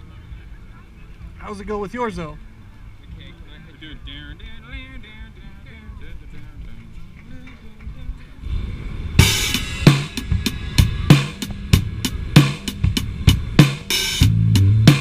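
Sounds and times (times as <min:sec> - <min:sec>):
quiet guitar: 0:00.0 - 0:08.6
loud bass line: 0:08.6 - 0:15.0
cymbal crash: 0:09.2 - 0:15.0
drum kit beat: 0:09.2 - 0:15.0.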